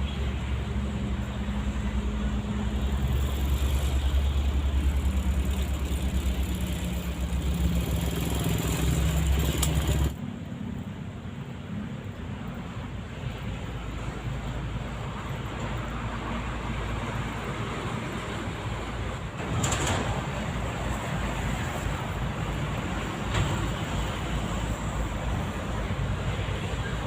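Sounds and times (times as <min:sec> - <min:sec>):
engine throbbing: 0:01.9 - 0:10.2.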